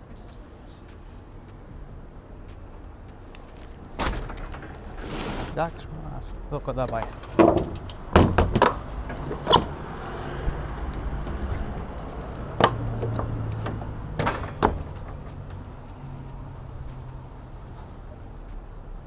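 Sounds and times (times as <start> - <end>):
sharp knocks and thuds: 3.4 - 5.7, 7.3 - 15.6.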